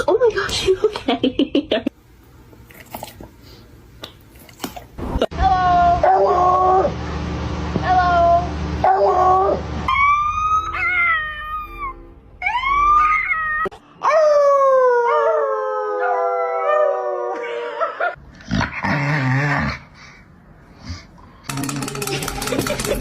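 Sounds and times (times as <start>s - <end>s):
dog howling: 5.5s - 7.0s, 8.0s - 18.2s.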